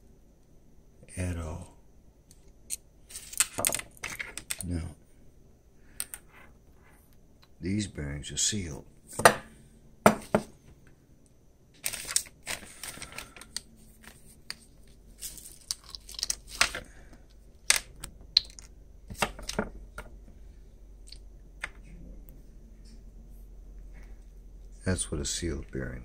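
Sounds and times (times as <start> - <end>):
small hard parts clicking: 14.4 - 20.1.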